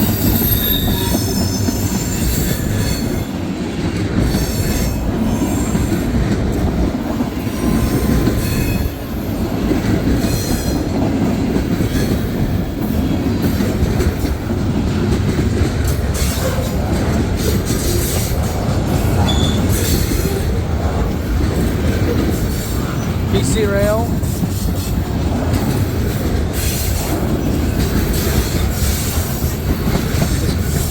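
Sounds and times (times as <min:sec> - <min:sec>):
high wheel squeals: 0:00.0 - 0:03.1, 0:19.2 - 0:20.0
freight train wheels rumbling: 0:00.0 - 0:30.9.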